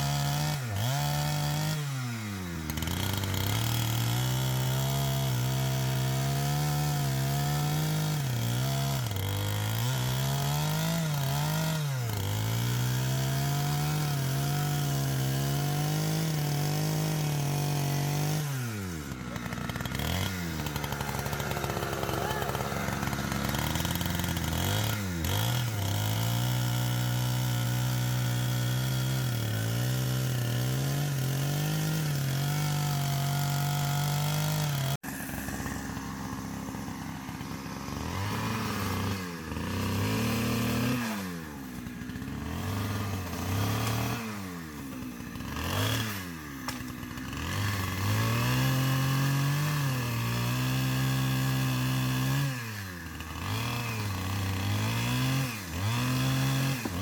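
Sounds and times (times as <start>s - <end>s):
chainsaw engine revving: 0.0s - 57.0s.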